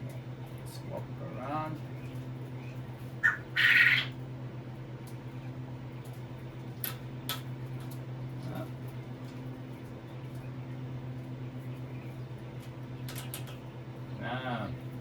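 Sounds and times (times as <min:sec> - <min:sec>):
steady low hum: 0:00.0 - 0:15.0
quail calling: 0:01.8 - 0:04.2.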